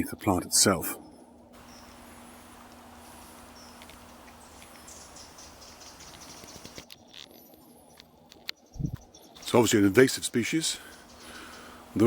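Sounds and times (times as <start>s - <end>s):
distant bird chirps: 1.0s - 12.0s
soft hiss: 1.6s - 6.9s.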